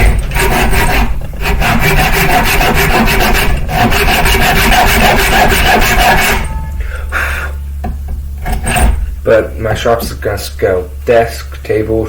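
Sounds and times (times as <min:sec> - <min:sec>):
hand tool rubbing on wood: 0:00.0 - 0:06.5.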